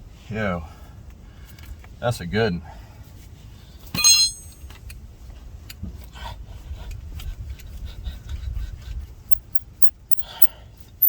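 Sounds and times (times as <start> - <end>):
sharp metallic ping: 4.0 - 4.7
metal clicks: 9.3 - 10.5
metal-on-metal scraping: 9.3 - 10.5.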